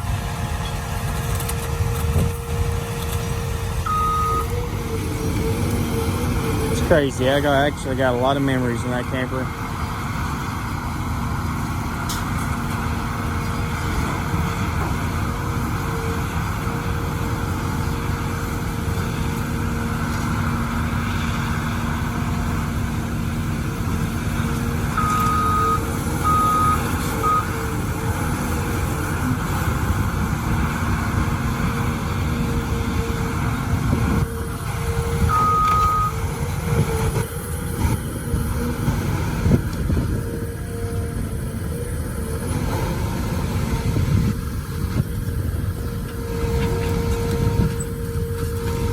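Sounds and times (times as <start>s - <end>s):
excavator diesel engine running: 0.0s - 48.9s
warning alarm beeping: 3.8s - 9.6s, 25.0s - 27.7s, 35.0s - 36.9s.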